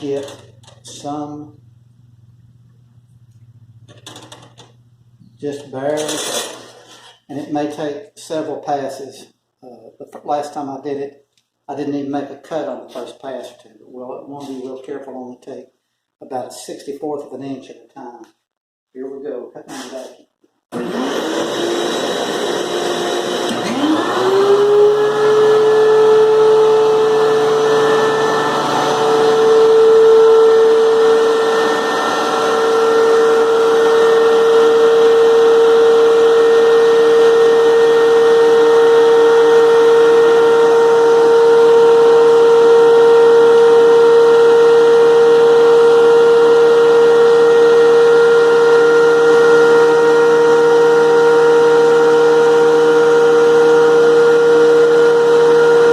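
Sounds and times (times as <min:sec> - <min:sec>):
planer motor whining: 0:20.7 - 0:55.9.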